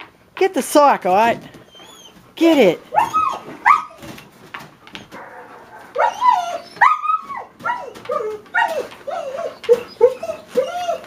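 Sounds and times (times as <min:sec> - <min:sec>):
dog whining and yipping: 0:01.6 - 0:02.3, 0:02.9 - 0:04.2, 0:04.9 - 0:11.0.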